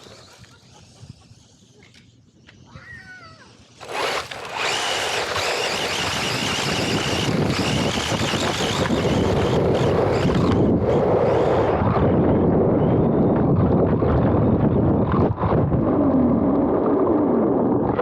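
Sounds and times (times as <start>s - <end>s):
high wavering motor whine: 3.6s - 13.8s
tyres running over dirt: 3.8s - 11.8s
wind rushing on microphone: 4.0s - 18.0s.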